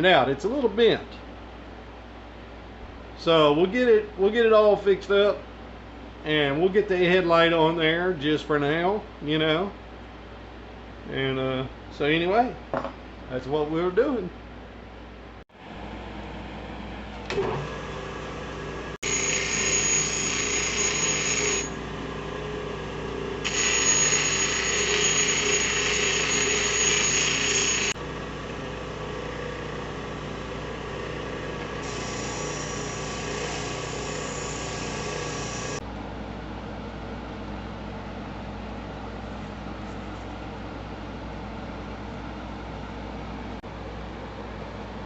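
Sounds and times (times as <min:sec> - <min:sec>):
power tool motor running: 0:17.4 - 0:35.8.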